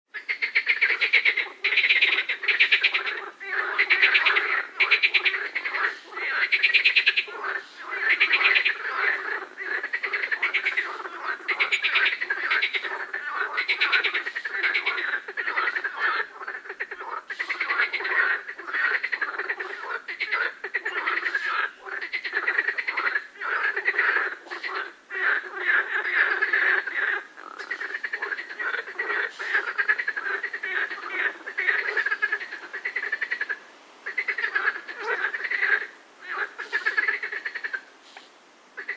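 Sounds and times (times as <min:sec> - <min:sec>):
chorus of frogs croaking: 0:00.1 - 0:38.2.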